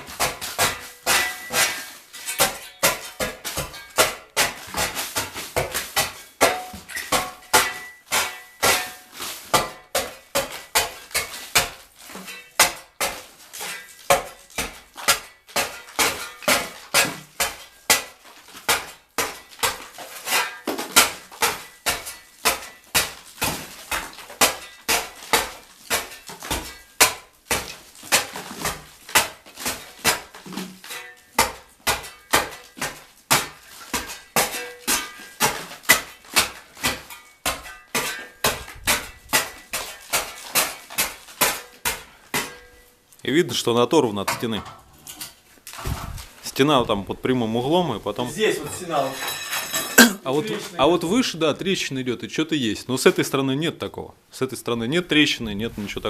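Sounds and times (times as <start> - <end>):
hammer striking steel tool: 49.2 - 50.2.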